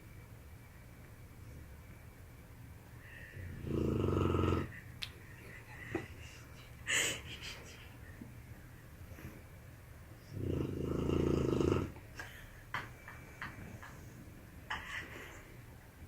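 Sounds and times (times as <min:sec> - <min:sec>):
dog snoring: 0:03.4 - 0:04.7, 0:10.3 - 0:12.0.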